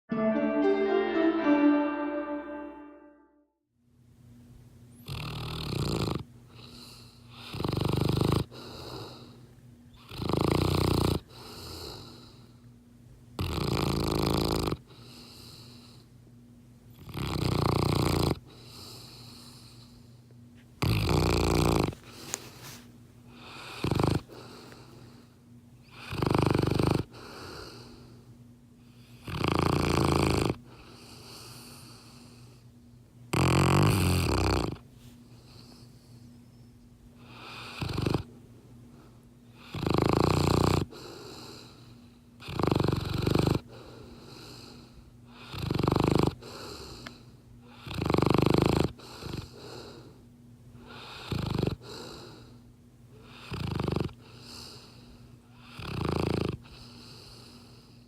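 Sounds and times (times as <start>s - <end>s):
dog snoring: 5.0s - 12.5s, 13.4s - 16.0s, 16.9s - 20.0s, 20.8s - 22.0s, 23.3s - 24.6s, 25.8s - 28.0s, 28.9s - 32.6s, 33.3s - 34.8s, 37.2s - 38.3s, 39.5s - 50.2s, 50.8s - 52.6s, 53.2s - 55.0s, 55.6s - 58.0s
dog breathing: 21.0s - 28.3s, 40.5s - 42.2s, 43.6s - 45.6s, 48.8s - 50.2s, 50.8s - 52.6s, 53.2s - 58.0s.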